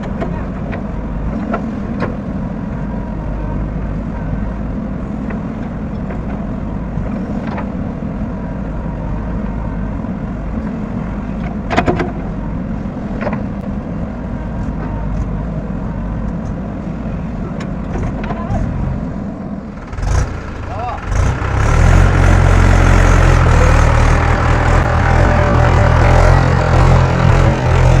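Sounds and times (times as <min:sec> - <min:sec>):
diesel engine running: 0:18.6 - 0:28.0.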